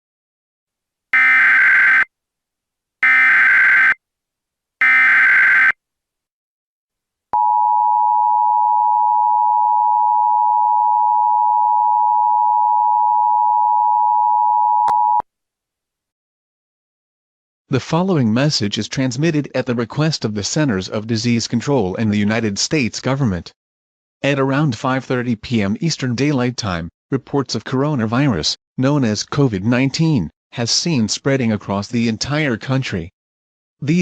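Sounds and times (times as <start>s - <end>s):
buzzy modem-like warble: 3.0s - 4.0s, 4.8s - 5.8s.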